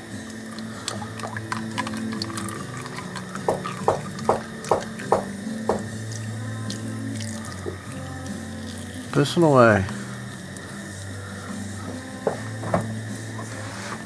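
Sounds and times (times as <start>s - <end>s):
oil pouring into a drain pan: 0.2s - 9.4s.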